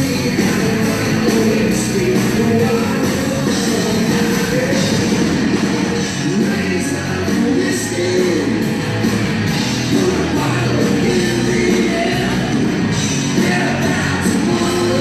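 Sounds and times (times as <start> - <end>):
lead vocal singing: 0.0 - 8.7, 9.7 - 15.0
distorted electric guitars: 0.0 - 15.0
drums with crashing cymbals: 0.0 - 15.0.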